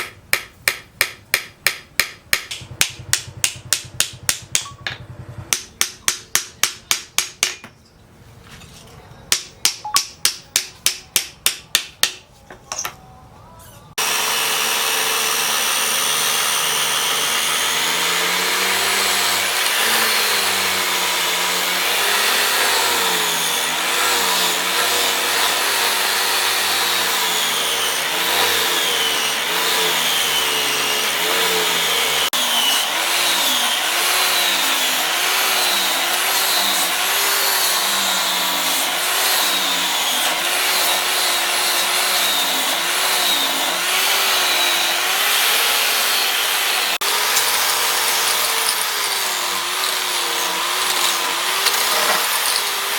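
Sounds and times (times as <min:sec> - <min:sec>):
electric grinder grinding steel: 0:14.0 - 0:52.9.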